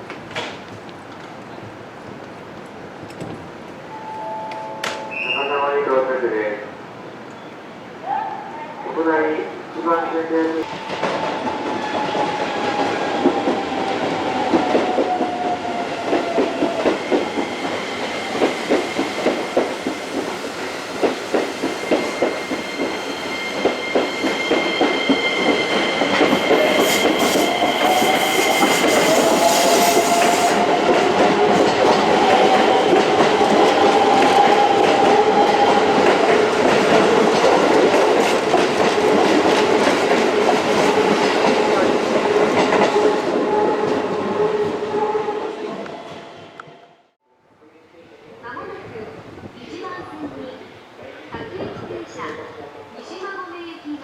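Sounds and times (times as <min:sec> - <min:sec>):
train wheels clacking over rail joints: 0:16.0 - 0:23.0, 0:23.6 - 0:43.2.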